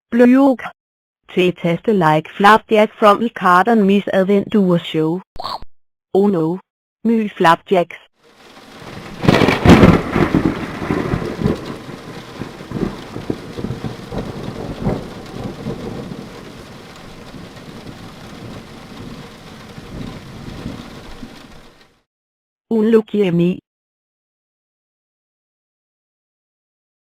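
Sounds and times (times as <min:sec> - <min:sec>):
steady rain: 0:08.2 - 0:22.0
thunder rumbles: 0:08.3 - 0:21.9
thunderclap: 0:08.3 - 0:21.9.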